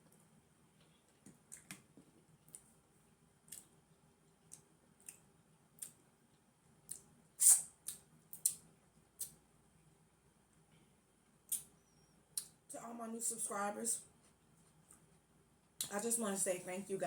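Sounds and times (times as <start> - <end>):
mouth chewing food: 3.4 - 8.6.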